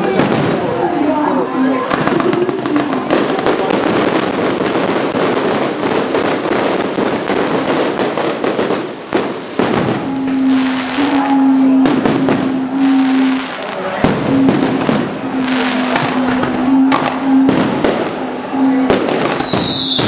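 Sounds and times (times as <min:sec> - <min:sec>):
fireworks crackling and banging: 0:00.0 - 0:20.0
steady held tone: 0:09.3 - 0:19.9.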